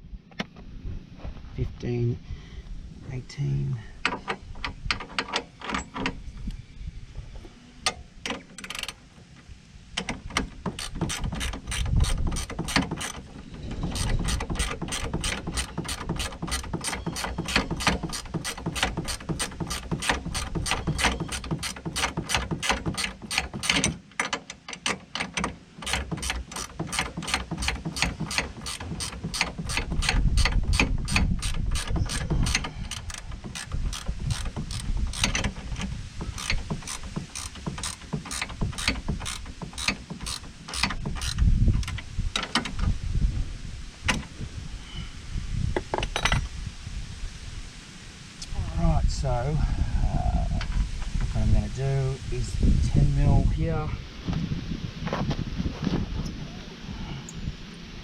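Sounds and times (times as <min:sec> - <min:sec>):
ratchet wrench clicking: 0:08.6 - 0:09.0, 0:10.4 - 0:13.2, 0:13.8 - 0:35.6, 0:36.2 - 0:42.6.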